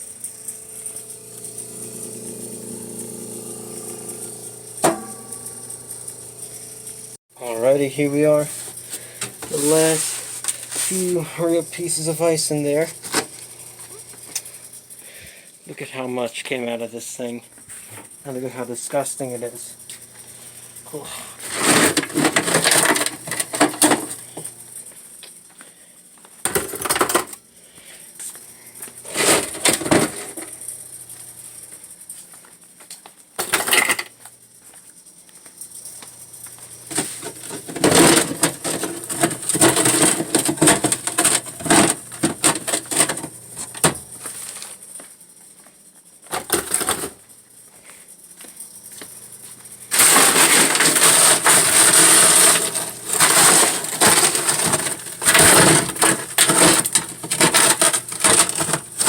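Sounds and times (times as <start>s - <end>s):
ice chunks clattering: 9.5s - 10.0s, 37.3s - 43.3s, 49.9s - 59.0s
ice being chipped and scraped: 50.0s - 59.0s.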